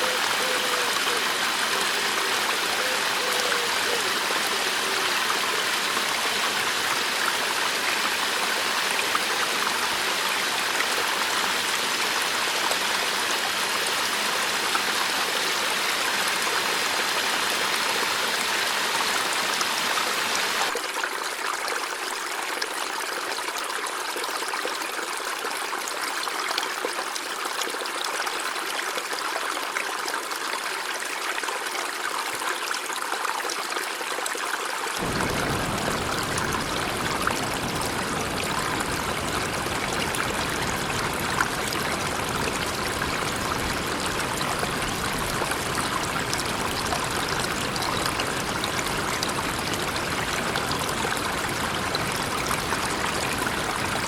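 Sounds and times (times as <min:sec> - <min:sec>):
river water flowing over rocks: 0:00.0 - 0:54.0.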